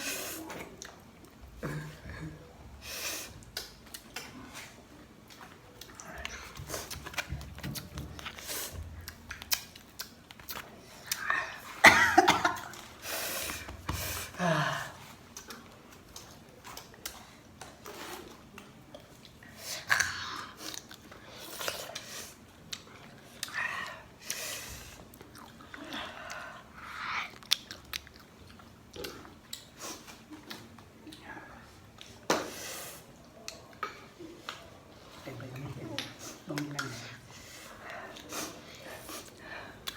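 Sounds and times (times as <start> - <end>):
person chewing crunchy fruit: 20.0 - 23.6, 25.0 - 31.2.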